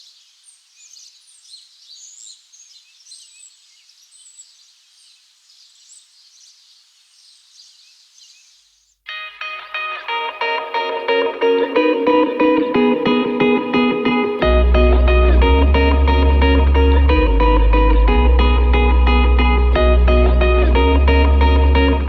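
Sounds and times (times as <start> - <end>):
birds chirping and singing: 0.0 - 8.9
faint outdoor hiss: 0.0 - 22.0.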